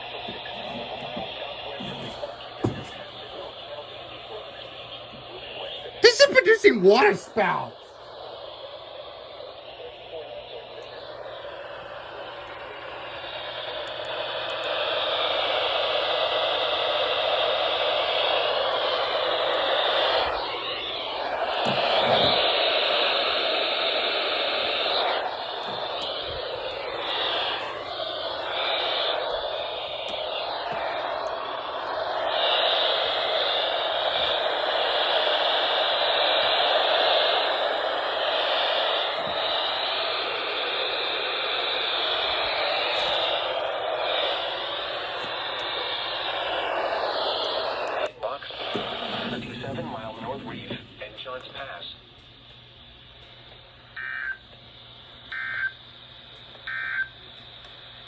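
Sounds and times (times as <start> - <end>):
radio static hiss: 0.0 - 52.2, 53.2 - 58.0.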